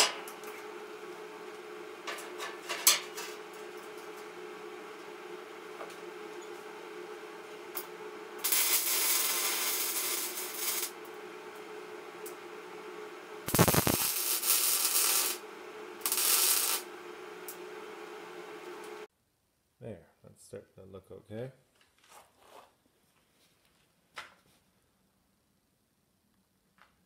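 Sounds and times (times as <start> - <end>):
steady hum: 0.0 - 19.1
welder arc crackling: 7.7 - 19.1.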